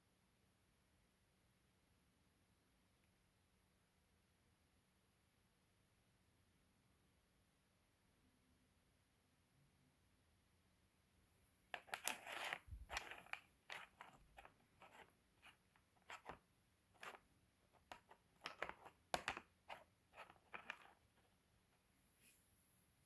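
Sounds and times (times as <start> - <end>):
stones clicking and scraping: 11.8 - 15.1.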